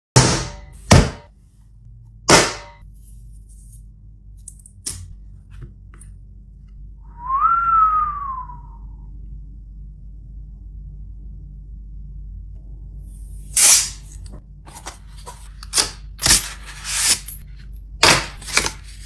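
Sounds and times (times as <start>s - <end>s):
loud sharp hits: 0.2s - 1.3s, 2.3s - 2.8s
sliding whistled note: 7.1s - 8.9s.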